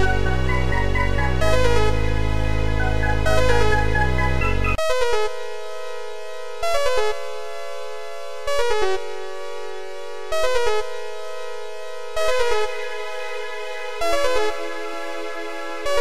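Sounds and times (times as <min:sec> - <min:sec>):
synthesizer music: 0:00.0 - 0:05.4, 0:10.3 - 0:16.0.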